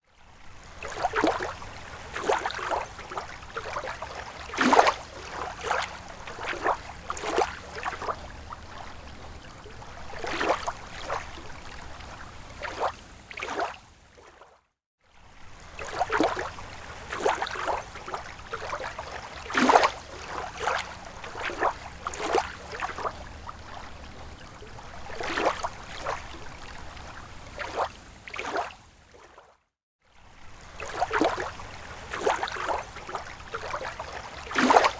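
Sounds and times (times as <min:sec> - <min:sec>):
water gurgling and splashing: 0:00.4 - 0:14.6, 0:15.2 - 0:29.6, 0:30.2 - 0:34.9.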